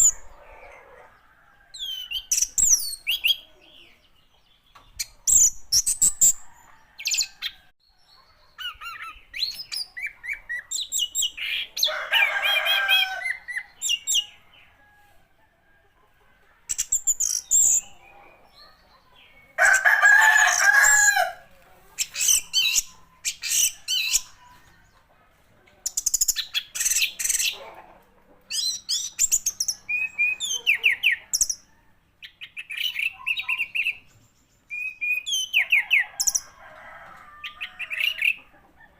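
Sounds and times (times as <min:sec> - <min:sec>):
longer lower bird calls: 0:00.0 - 0:15.2.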